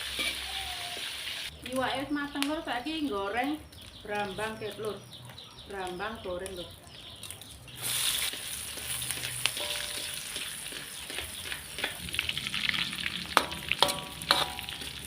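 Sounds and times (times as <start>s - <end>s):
shallots sizzling in oil: 0.0s - 4.8s, 7.7s - 15.0s
utensil clinking against pan: 9.5s - 10.5s, 13.4s - 15.0s.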